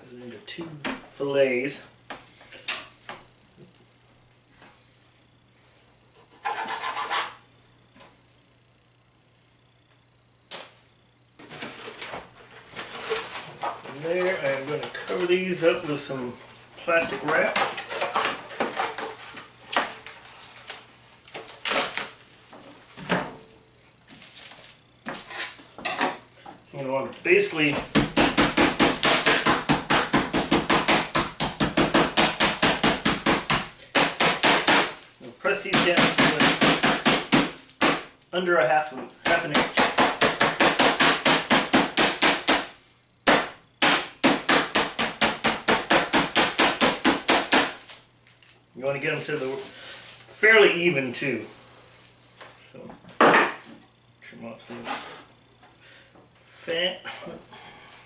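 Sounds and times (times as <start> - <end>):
plastic wrap crinkling: 24.1 - 24.8, 49.2 - 50.4
meat pounder striking meat: 27.8 - 35.0, 35.6 - 38.1, 39.2 - 47.8.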